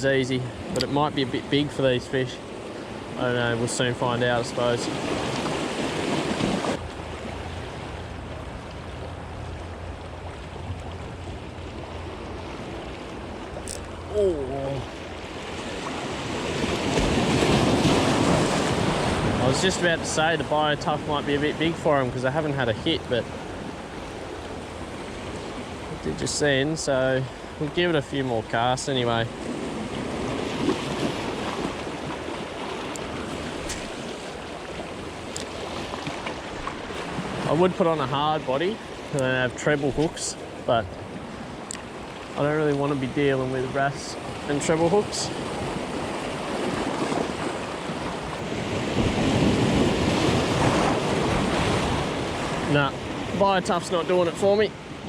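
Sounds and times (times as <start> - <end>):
sea washing against rocky shore: 0.0 - 55.0.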